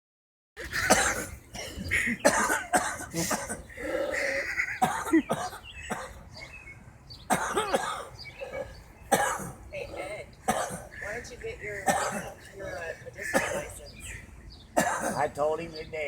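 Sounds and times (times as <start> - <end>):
man coughing: 0.7 - 6.2, 7.3 - 8.1, 9.1 - 9.6, 11.8 - 12.4, 14.8 - 15.3.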